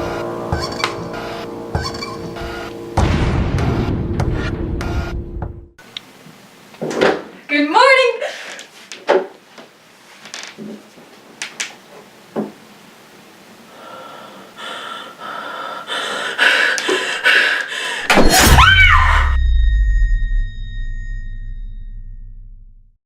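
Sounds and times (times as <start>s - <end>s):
woman screaming: 18.3s - 19.4s
deep low rumble: 19.1s - 23.0s.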